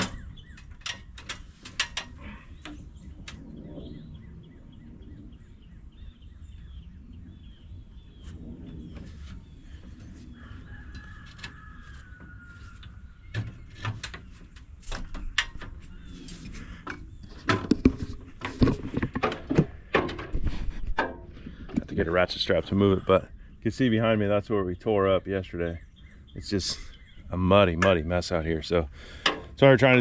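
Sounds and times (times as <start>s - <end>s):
bird chirping: 0.0s - 1.3s, 2.1s - 19.0s, 21.4s - 29.8s
sharp clicks and knocks: 0.0s - 3.5s, 12.8s - 16.0s, 16.8s - 21.9s, 29.2s - 29.6s
low outdoor rumble: 0.0s - 30.0s.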